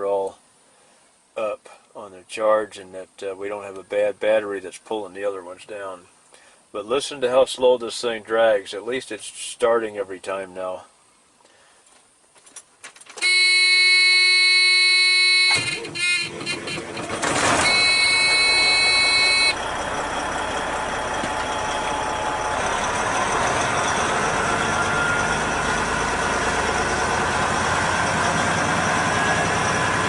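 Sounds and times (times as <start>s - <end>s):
truck warning buzzer: 13.2s - 30.0s
truck engine running: 14.8s - 30.0s.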